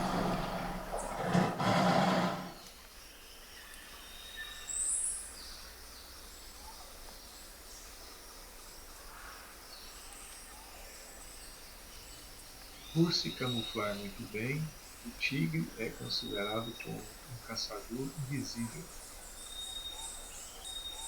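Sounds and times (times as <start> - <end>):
tiger roar: 0.0 - 2.6
insect hum: 0.0 - 21.0
bird chirps: 9.8 - 21.0.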